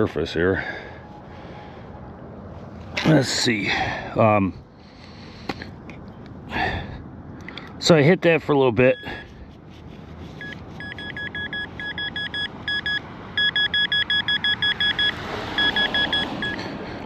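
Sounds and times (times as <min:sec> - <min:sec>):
metal detector beeping: 0:08.9 - 0:09.4, 0:10.4 - 0:16.7.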